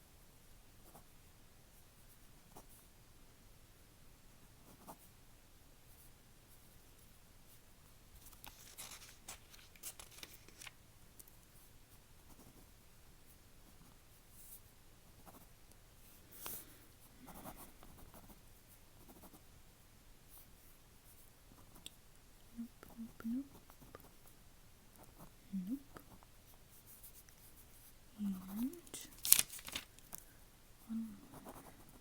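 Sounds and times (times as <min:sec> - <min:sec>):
pen scratching on paper: 0:31.4 - 0:32.0.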